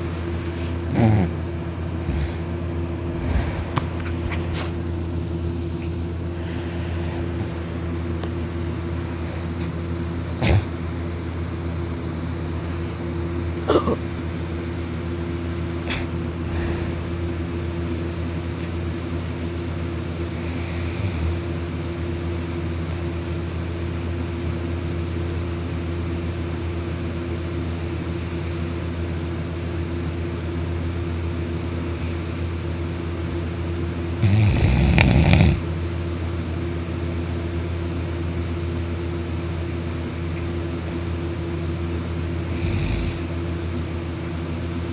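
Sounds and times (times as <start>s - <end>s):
person snoring loudly: 0.8s - 1.4s, 2.0s - 2.5s, 10.4s - 10.8s, 15.9s - 17.1s, 20.4s - 21.5s, 34.2s - 35.6s, 42.5s - 43.3s.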